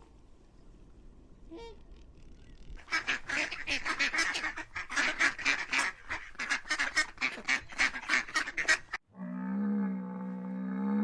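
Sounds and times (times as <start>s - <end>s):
ducks quacking: 2.8s - 9.0s.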